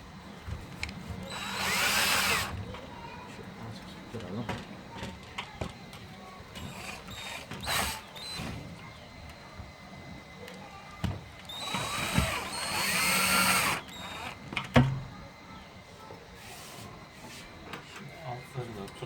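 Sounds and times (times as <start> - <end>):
cordless drill driving screw: 1.3 - 2.6, 6.6 - 8.5, 11.4 - 14.4.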